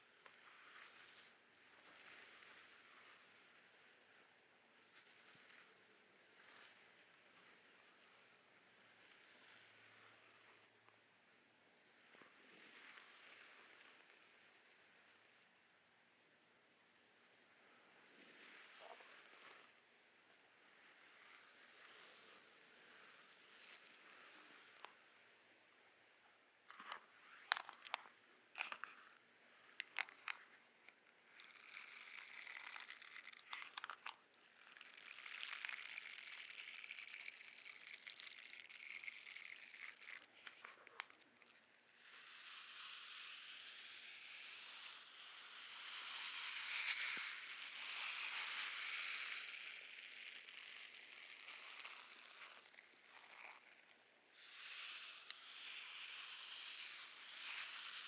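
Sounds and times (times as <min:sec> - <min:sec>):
comb drawn through hair: 0:26.7 - 0:58.0
brush scratching over skin: 0:31.1 - 0:42.6.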